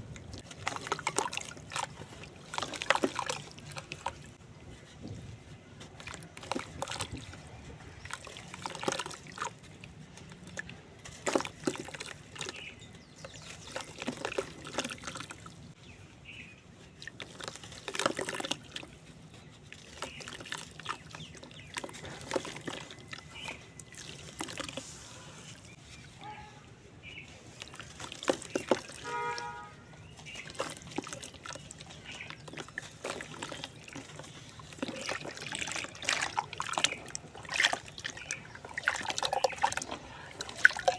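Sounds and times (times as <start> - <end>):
wet cement lumps crumbling: 0.0 - 15.8, 16.9 - 26.2, 27.0 - 40.9
water trickling: 27.4 - 40.9.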